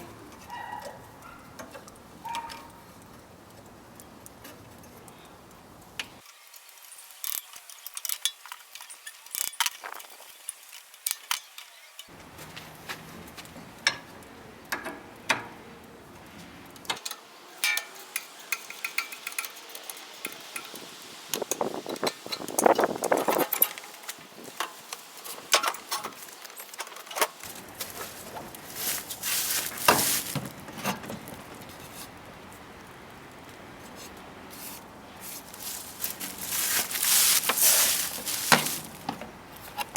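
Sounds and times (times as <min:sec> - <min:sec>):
scrubbing metal parts: 0:16.2 - 0:39.9.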